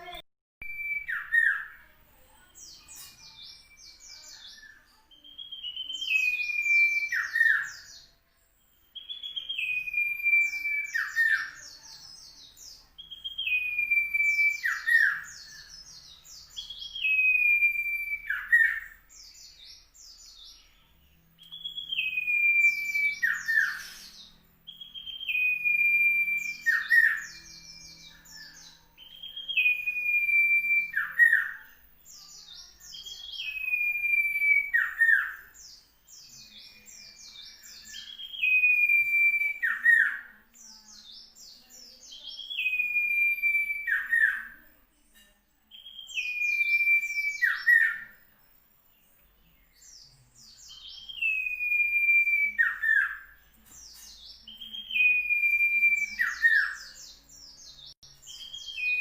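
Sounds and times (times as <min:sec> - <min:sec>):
bird whistling song: 0:00.6 - 0:01.9, 0:02.6 - 0:08.2, 0:08.8 - 0:20.8, 0:21.4 - 0:44.7, 0:45.7 - 0:48.3, 0:49.6 - 0:59.0.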